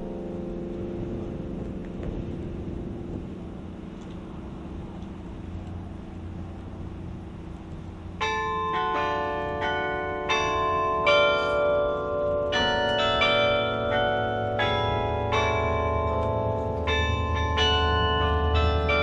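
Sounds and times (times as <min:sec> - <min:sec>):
low steady rumble: 0:00.0 - 0:11.1
tower bells ringing: 0:00.0 - 0:19.0.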